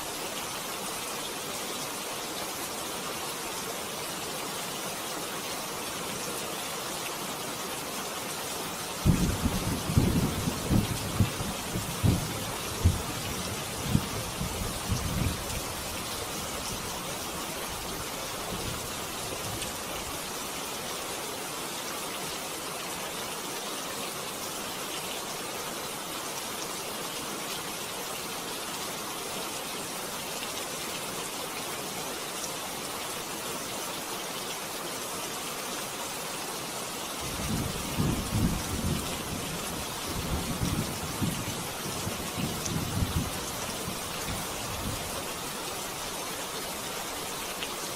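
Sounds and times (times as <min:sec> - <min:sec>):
heavy rain hissing: 0:00.0 - 0:47.9
thunder rumbling: 0:09.0 - 0:13.1.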